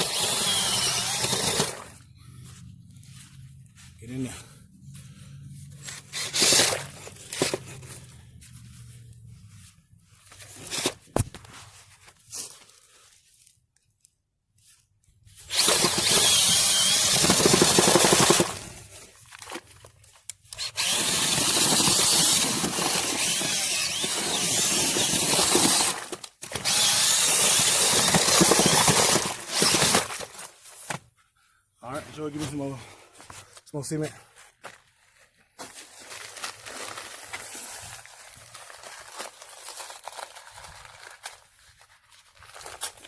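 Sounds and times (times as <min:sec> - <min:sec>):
power drill mixing concrete: 0:00.0 - 0:02.0, 0:05.8 - 0:07.8, 0:15.4 - 0:19.1, 0:20.5 - 0:30.5.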